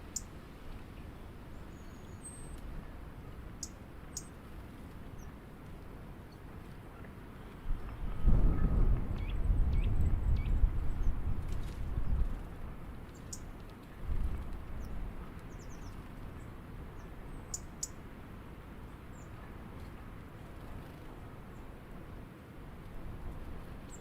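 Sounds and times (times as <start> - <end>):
small birds chirping: 3.5 - 4.4, 13.0 - 13.6, 14.7 - 18.0
steady low rumble: 7.8 - 13.1.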